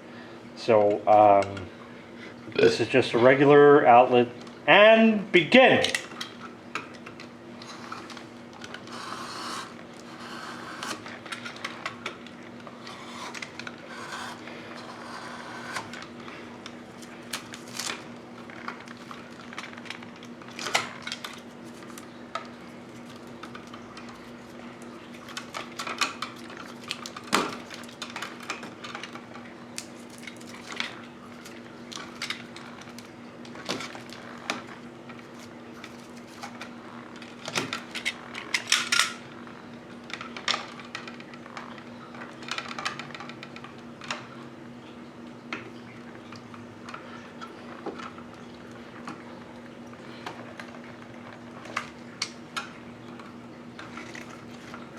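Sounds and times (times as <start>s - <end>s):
steady low hum: 0.0s - 42.9s.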